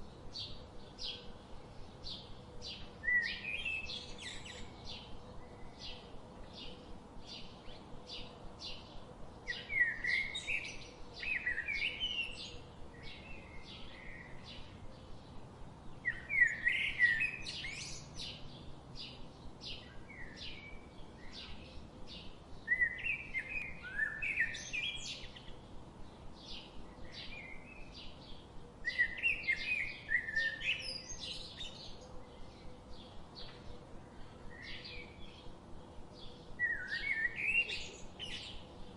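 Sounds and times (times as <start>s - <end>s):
bird warbling song: 2.0s - 38.9s.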